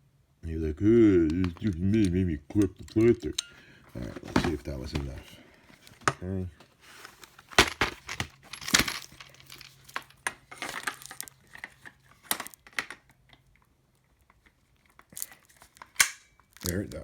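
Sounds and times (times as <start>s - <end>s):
plastic and metal clicks and clanks: 1.3s - 3.5s, 14.2s - 17.0s.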